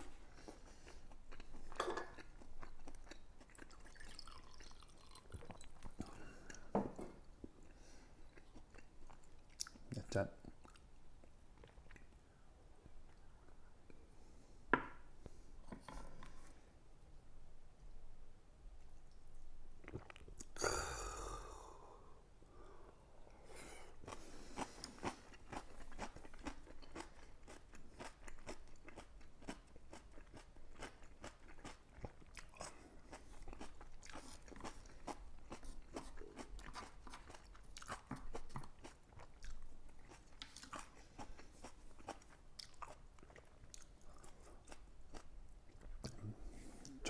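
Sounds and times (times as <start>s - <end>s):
person chewing crunchy food: 0.0s - 9.9s, 23.6s - 47.0s.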